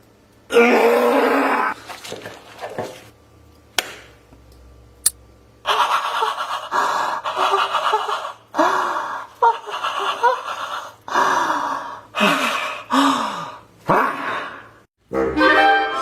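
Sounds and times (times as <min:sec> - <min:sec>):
person panting hard: 0:05.7 - 0:14.8.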